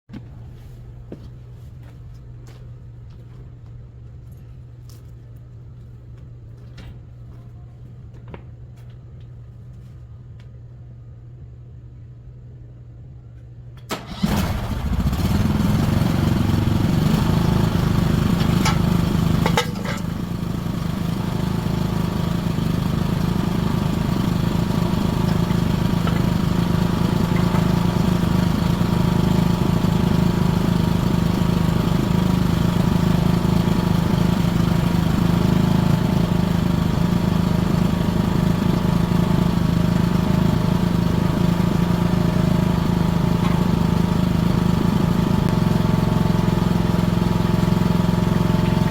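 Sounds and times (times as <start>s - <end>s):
mini excavator engine running: 13.8s - 48.9s.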